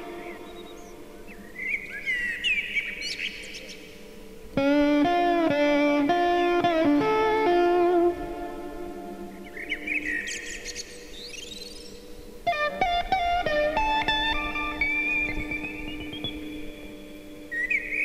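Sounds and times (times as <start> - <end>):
sustained guitar notes: 0.0 - 1.6, 4.5 - 10.6, 12.4 - 17.8
bird-like chirps: 0.0 - 4.0, 9.3 - 12.1, 13.9 - 18.0
faint steady drone: 0.0 - 18.0.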